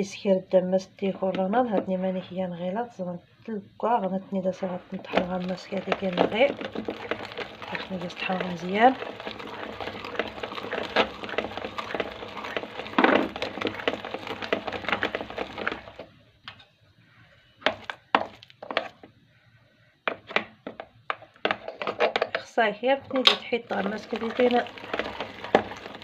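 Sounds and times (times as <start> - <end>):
crackling grinding: 4.4 - 16.1, 23.6 - 26.0.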